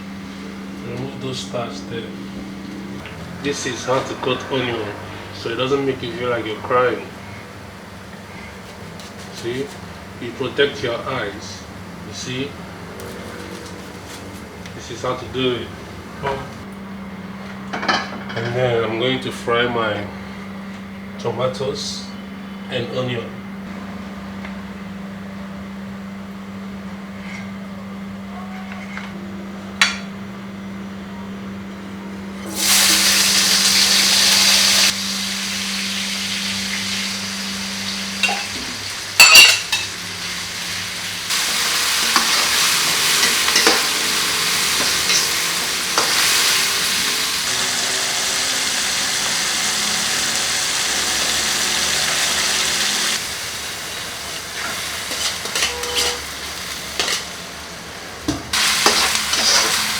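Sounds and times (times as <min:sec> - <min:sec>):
steady low hum: 0:00.0 - 0:32.6
vegetables sizzling in hot oil: 0:32.5 - 0:57.8, 0:58.6 - 0:59.9.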